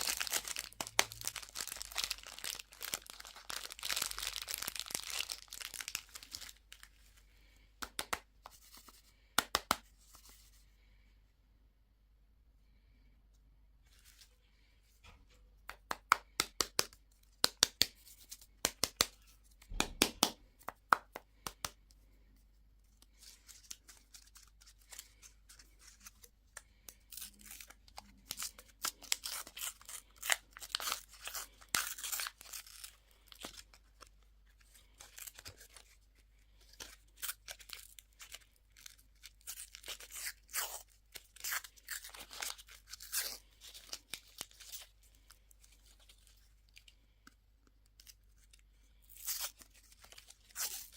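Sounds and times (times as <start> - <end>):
candy packaging crinkling: 0.0 - 7.1, 23.0 - 50.9.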